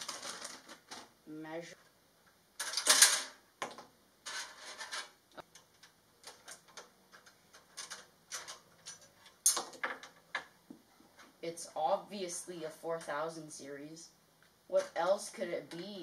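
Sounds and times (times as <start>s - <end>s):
rustling of cables: 0.0s - 1.1s, 2.6s - 11.4s.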